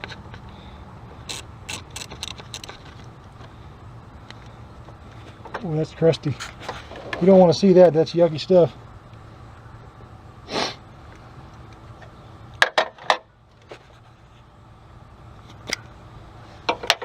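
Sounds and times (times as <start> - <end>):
sharp tool clicks: 1.3 - 2.8
breathy sniff: 10.4 - 10.8.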